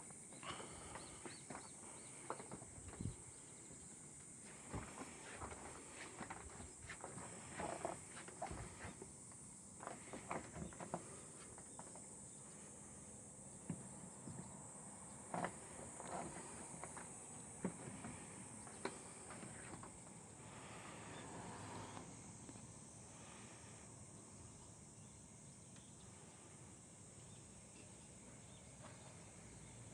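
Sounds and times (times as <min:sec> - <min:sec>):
high-pitched hiss: 0:16.2 - 0:28.4.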